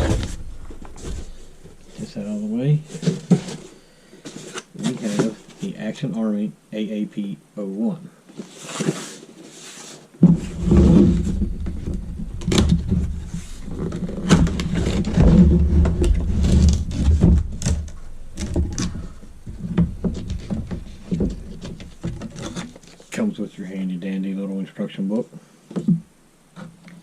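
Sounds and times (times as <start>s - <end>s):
rubbing and scraping with clicks: 0.0s - 5.7s, 8.3s - 23.3s.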